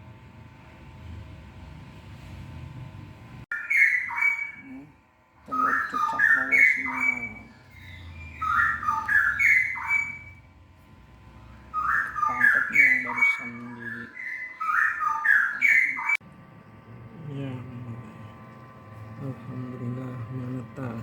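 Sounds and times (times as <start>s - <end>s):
bulbul singing whistled notes: 5.5s - 10.5s, 11.7s - 16.2s.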